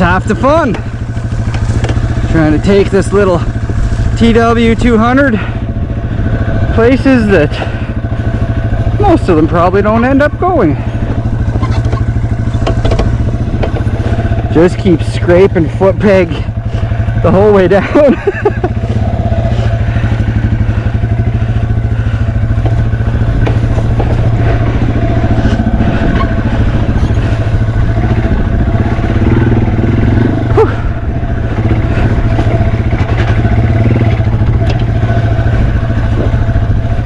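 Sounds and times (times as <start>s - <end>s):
motorcycle engine running: 0.0s - 37.0s
foot peg scraping trail: 10.9s - 14.6s, 20.6s - 30.3s.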